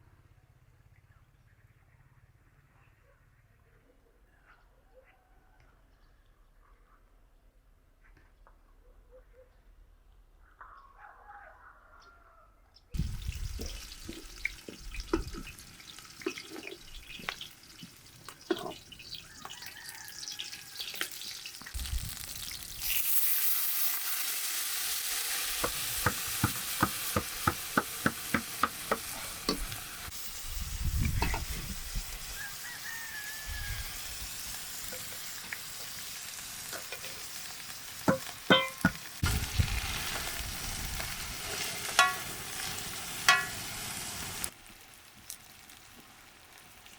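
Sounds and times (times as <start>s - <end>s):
food sizzling in hot oil: 13.0s - 46.9s
utensil knocking against pot: 25.6s - 29.6s, 38.1s - 39.0s.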